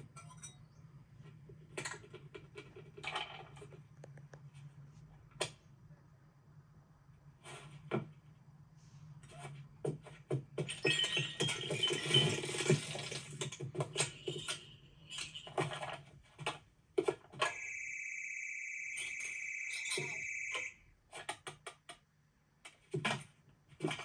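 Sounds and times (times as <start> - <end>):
high electronic tone: 17.5 - 20.8.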